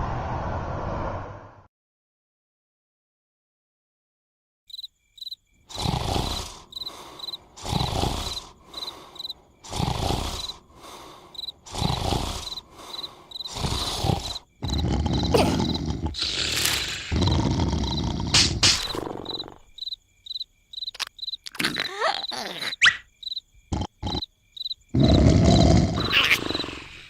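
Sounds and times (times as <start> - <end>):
crickets chirping: 4.7 - 27.0
cartoon character snoring: 5.7 - 19.7, 21.5 - 23.0, 23.7 - 24.3, 24.9 - 27.0.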